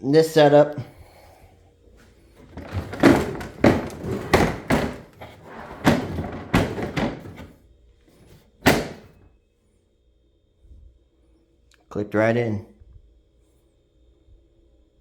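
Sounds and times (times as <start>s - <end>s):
plastic tool boxes knocking: 2.4s - 7.6s, 8.2s - 9.2s.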